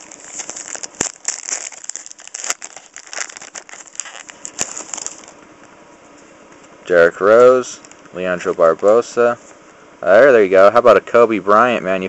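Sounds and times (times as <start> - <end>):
trading cards being handled: 0.0 - 5.4.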